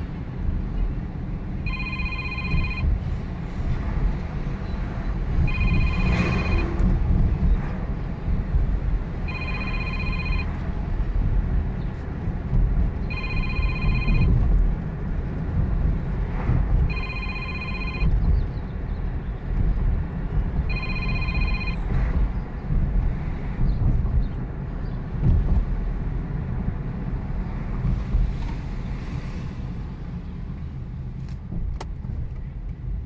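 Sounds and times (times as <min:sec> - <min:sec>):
steady low rumble: 0:00.0 - 0:28.2
electronic ringing tone: 0:01.6 - 0:03.0, 0:05.4 - 0:06.8, 0:09.3 - 0:10.7, 0:13.1 - 0:14.4, 0:16.9 - 0:18.2, 0:20.7 - 0:21.9.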